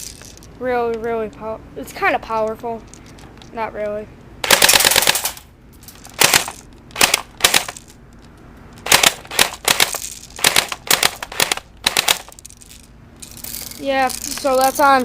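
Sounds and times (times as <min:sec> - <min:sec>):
airsoft gun firing bursts: 0:04.4 - 0:05.4, 0:06.2 - 0:07.8, 0:08.8 - 0:12.3.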